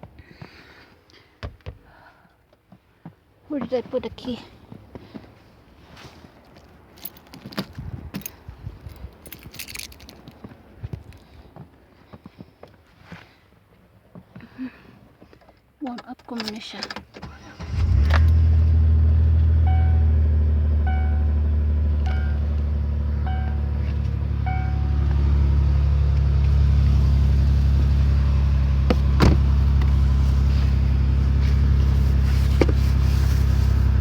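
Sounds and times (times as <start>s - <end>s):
car engine idling: 17.6s - 34.0s
dashboard warning chime beeping: 19.6s - 25.8s.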